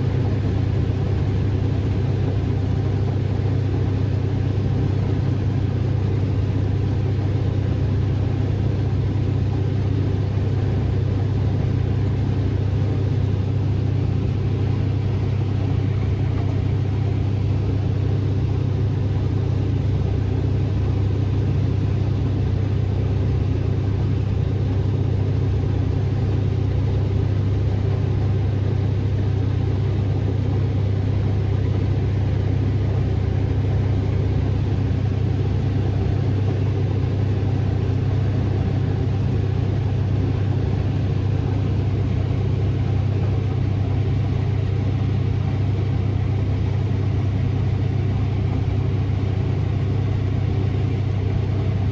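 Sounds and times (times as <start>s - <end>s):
diesel engine droning: 0.0s - 22.0s, 29.6s - 51.9s.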